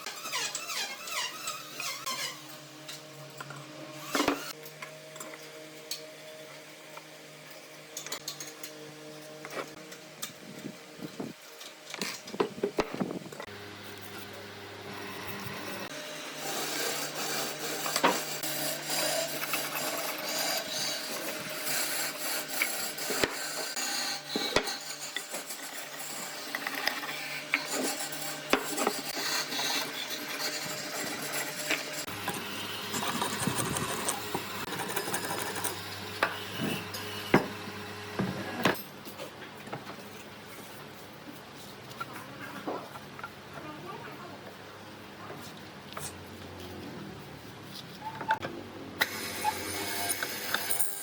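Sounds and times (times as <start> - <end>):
woodworking machine motor hum: 13.5 - 38.8
wood being rasped: 15.9 - 37.0.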